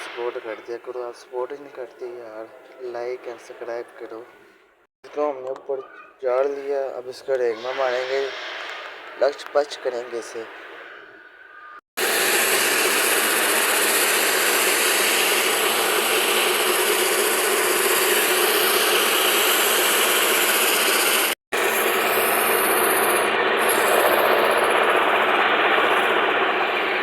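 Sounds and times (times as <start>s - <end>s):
lathe humming: 12.0s - 26.8s.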